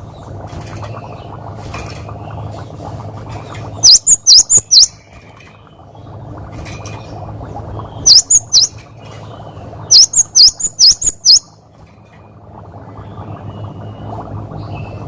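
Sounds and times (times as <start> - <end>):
steady low hum: 0.0 - 15.0
bird high whistled calls: 3.8 - 5.1, 8.0 - 8.8, 9.9 - 11.6.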